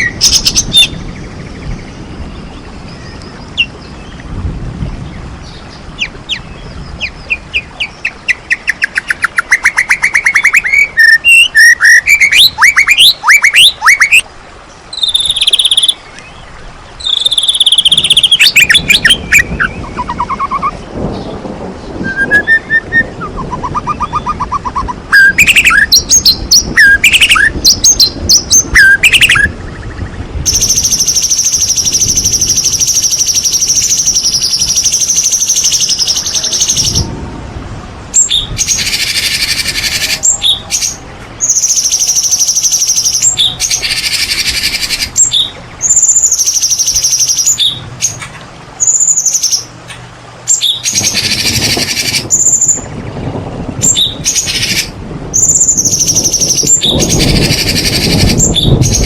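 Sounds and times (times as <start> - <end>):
bird whistling notes: 6.0 - 14.2, 14.9 - 16.0, 17.0 - 21.3, 22.0 - 29.6, 53.8 - 59.0.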